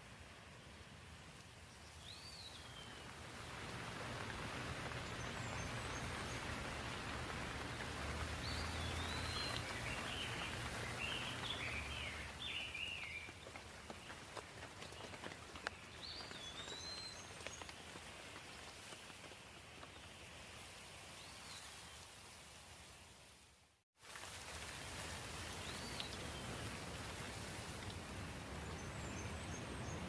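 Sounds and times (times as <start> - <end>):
rain falling: 0.0 - 22.9, 24.0 - 30.0
small birds chirping: 1.7 - 20.4.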